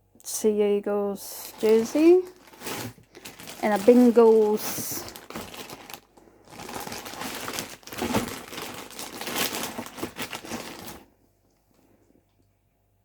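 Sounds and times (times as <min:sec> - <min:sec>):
packaging crinkling and rustling: 0:01.3 - 0:11.1.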